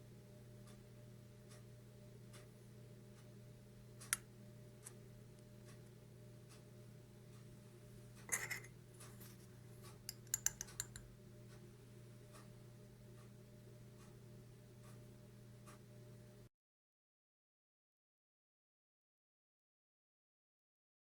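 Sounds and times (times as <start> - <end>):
steady low hum: 0.0 - 16.5
small objects clicking on desk: 9.8 - 11.1.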